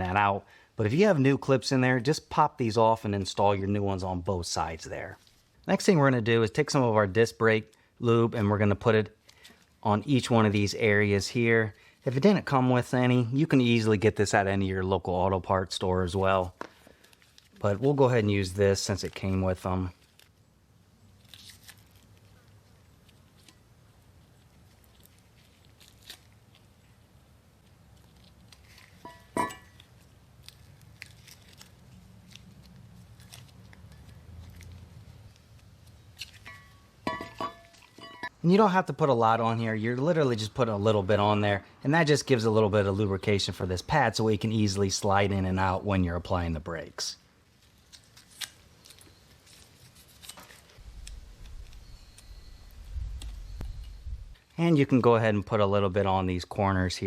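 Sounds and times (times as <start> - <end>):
packet crinkling: 21.0 - 27.0, 29.7 - 37.1
sharp metallic clink: 29.0 - 29.8, 36.4 - 38.4
low rumble: 50.8 - 54.4.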